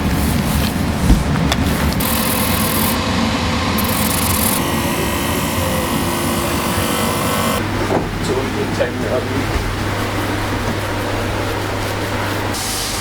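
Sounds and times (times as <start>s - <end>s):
faint steady motor tone: 2.0s - 7.6s.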